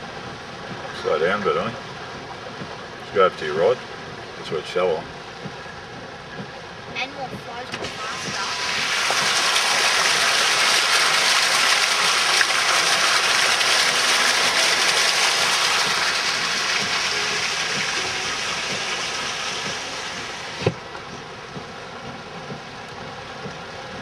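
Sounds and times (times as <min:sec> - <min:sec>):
car driving through floodwater: 0:00.0 - 0:24.0
water spraying against car body: 0:07.0 - 0:24.0.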